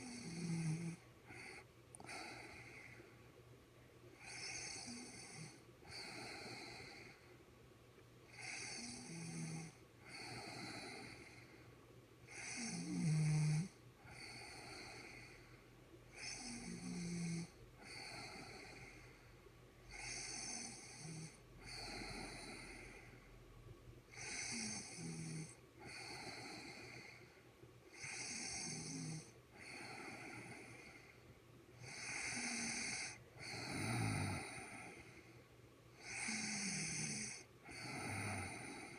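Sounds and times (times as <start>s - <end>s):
woman snoring: 0.0s - 2.8s, 4.2s - 7.2s, 8.3s - 11.4s, 12.3s - 15.4s, 16.2s - 19.0s, 19.9s - 23.1s, 24.1s - 27.2s, 27.9s - 31.1s, 31.8s - 35.2s, 36.0s - 38.9s.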